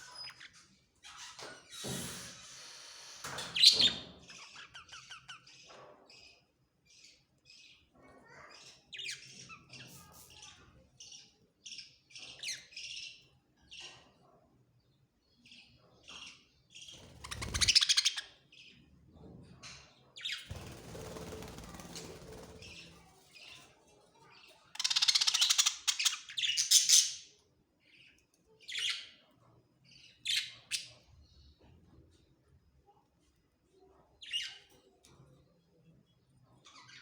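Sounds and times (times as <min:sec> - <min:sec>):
budgerigars chirping: 0:17.1 - 0:18.3.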